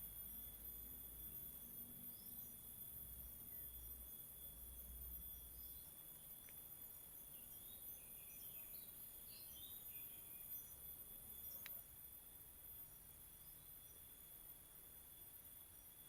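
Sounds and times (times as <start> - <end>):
high-pitched insect trill: 0.0 - 16.0
faint clicks: 11.5 - 11.8.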